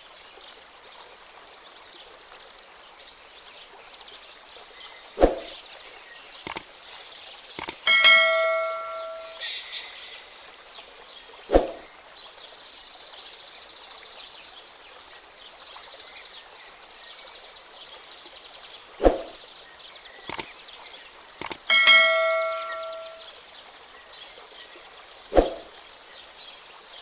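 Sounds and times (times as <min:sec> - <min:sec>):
faint steady chirping: 0:06.3 - 0:10.4, 0:19.2 - 0:26.1
metallic ding: 0:07.6 - 0:09.5, 0:21.4 - 0:23.3.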